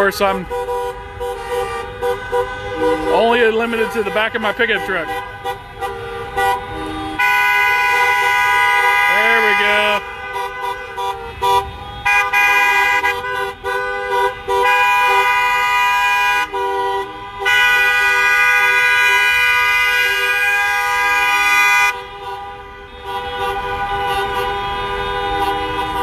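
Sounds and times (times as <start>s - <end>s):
vehicle horns honking: 0.0s - 26.0s.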